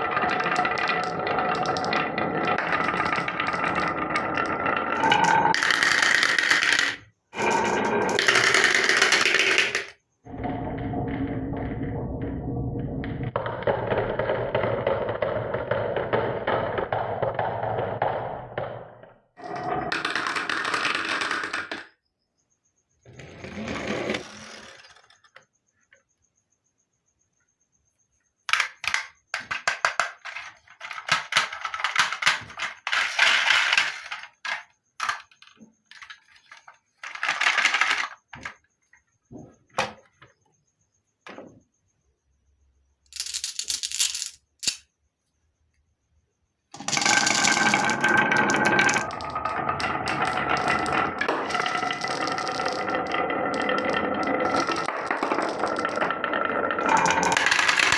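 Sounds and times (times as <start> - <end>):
marbles clacking on track: 0.0 - 10.8, 13.3 - 22.0, 28.5 - 38.6, 43.1 - 44.9, 46.7 - 57.9
marbles rolling on track: 0.0 - 22.0, 23.1 - 25.6, 28.5 - 39.1, 43.0 - 45.0, 46.7 - 57.9.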